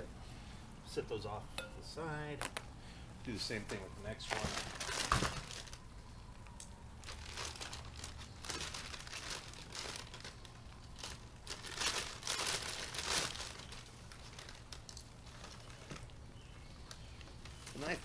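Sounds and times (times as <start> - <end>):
plastic bags crinkling: 3.5 - 16.2.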